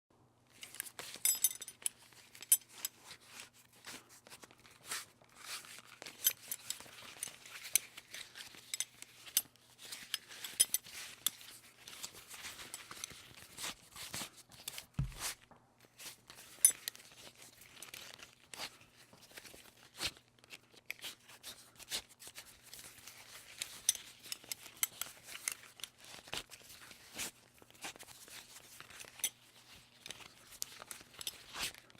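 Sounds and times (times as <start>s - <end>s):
belt rubbing and rustling: 0.5s - 31.9s
belt buckle clicking: 0.6s - 3.0s.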